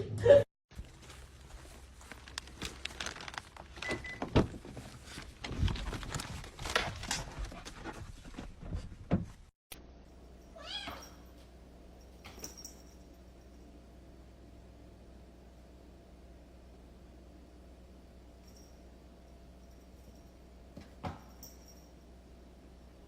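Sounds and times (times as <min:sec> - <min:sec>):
knocks and thumps: 0:04.1 - 0:09.5.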